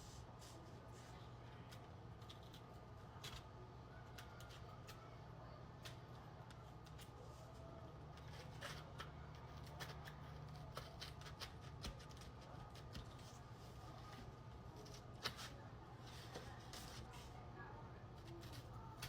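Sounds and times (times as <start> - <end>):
knife cutting foam board: 8.2 - 13.2.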